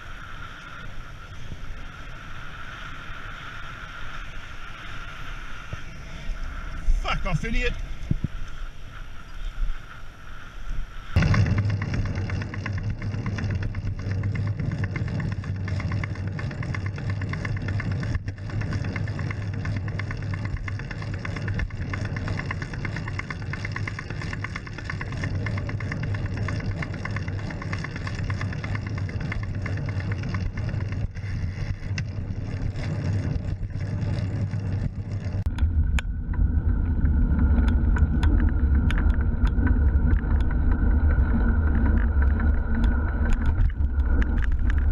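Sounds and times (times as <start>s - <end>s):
steady road noise: 0.0s - 44.9s
car engine running: 11.2s - 44.9s.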